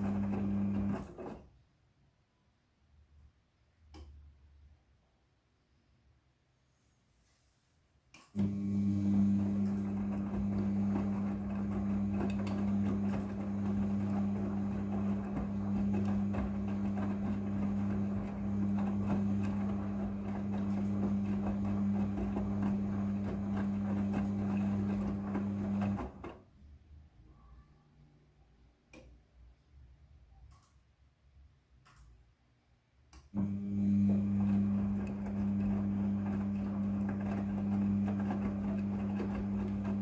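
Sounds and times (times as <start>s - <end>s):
washing machine hum: 0.0s - 1.6s, 8.4s - 26.6s, 33.4s - 40.0s.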